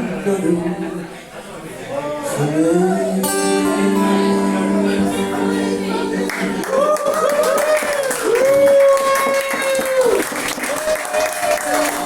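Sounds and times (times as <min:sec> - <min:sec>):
acoustic guitar chord ringing: 0:03.2 - 0:06.6
audience clapping and cheering: 0:06.2 - 0:12.0.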